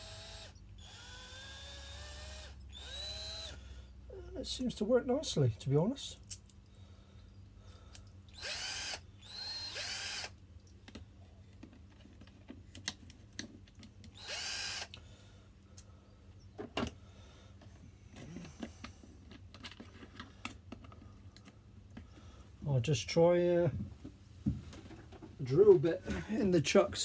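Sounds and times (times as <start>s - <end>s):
cordless drill motor whine: 0.0s - 3.6s, 8.3s - 10.4s, 14.1s - 15.0s.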